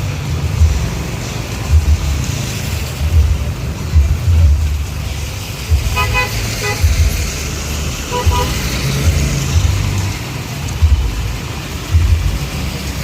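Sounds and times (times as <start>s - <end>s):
heavy low rumble: 0.0s - 13.0s
traffic noise: 0.0s - 13.0s
vehicle horn toots: 5.9s - 7.0s, 8.1s - 8.7s.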